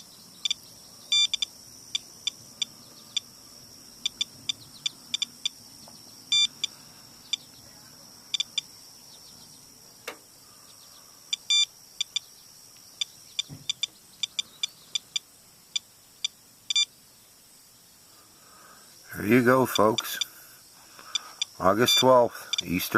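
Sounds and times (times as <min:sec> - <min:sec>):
geiger counter beeping: 0:00.0 - 0:03.3, 0:04.0 - 0:05.6, 0:06.3 - 0:06.7, 0:11.3 - 0:12.3, 0:13.0 - 0:16.9, 0:19.6 - 0:20.4, 0:21.1 - 0:22.9.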